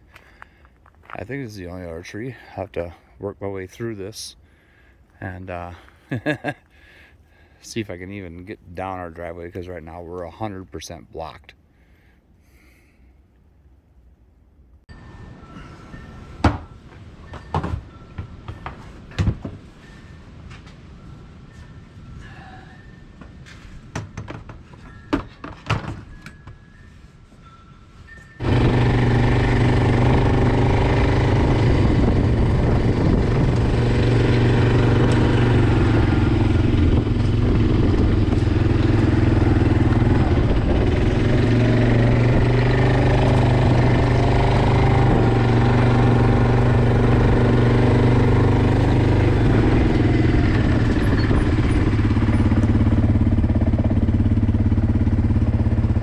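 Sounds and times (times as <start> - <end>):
chainsaw engine running: 28.4 - 56.0.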